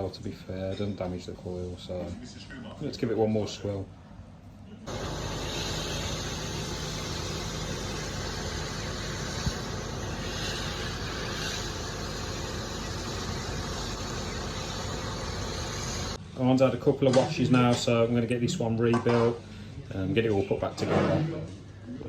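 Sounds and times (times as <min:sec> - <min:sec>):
small pump humming: 0:04.9 - 0:16.2
water spraying hiss: 0:04.9 - 0:16.2.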